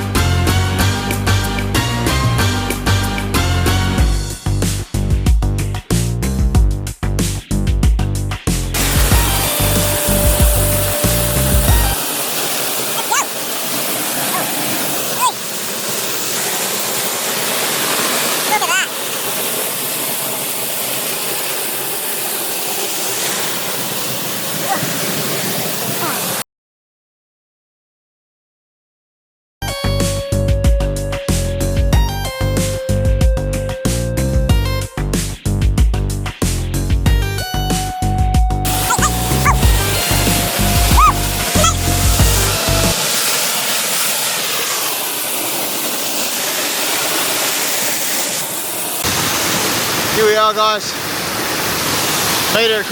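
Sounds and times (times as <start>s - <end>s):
waterfall rushing: 8.8s - 26.4s, 38.7s - 52.9s.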